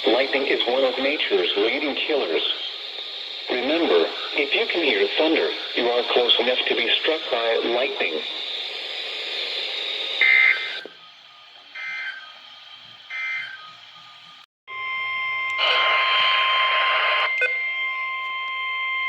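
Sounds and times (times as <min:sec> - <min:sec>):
high-pitched weather alert tone: 0:00.0 - 0:12.4
radio static: 0:00.0 - 0:12.4
warbling data tones: 0:00.0 - 0:14.4.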